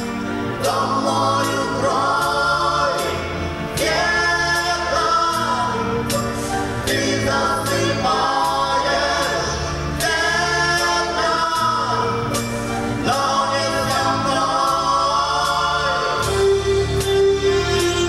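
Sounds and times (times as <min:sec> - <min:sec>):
choir-like vocals with instruments: 0:00.0 - 0:18.0.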